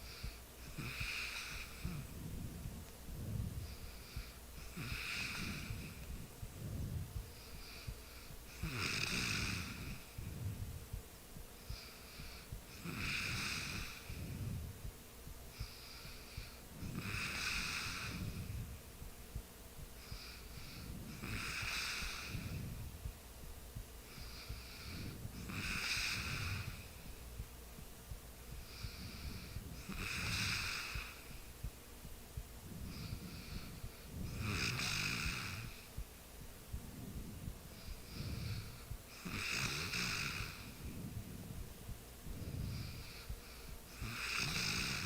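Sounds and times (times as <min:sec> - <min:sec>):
person snoring: 0:00.0 - 0:10.7, 0:11.6 - 0:14.7, 0:15.5 - 0:18.7, 0:20.0 - 0:22.8, 0:24.1 - 0:27.1, 0:28.6 - 0:31.4, 0:32.6 - 0:35.9, 0:36.9 - 0:41.5, 0:42.3 - 0:45.0.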